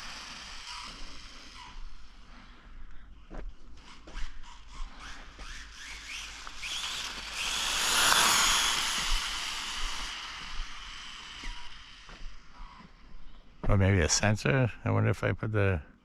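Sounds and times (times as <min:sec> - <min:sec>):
rc car motor whine: 0:00.0 - 0:02.7, 0:03.7 - 0:13.4.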